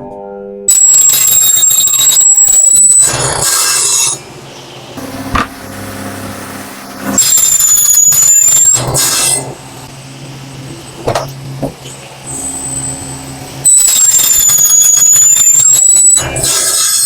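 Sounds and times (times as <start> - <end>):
saw motor humming: 5.0 - 9.4
power saw cutting with whine: 5.0 - 9.5.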